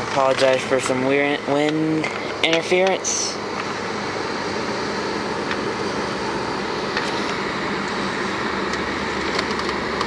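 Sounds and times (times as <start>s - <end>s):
air-conditioning blower rushing: 0.0s - 10.0s
engine idling: 0.0s - 10.0s.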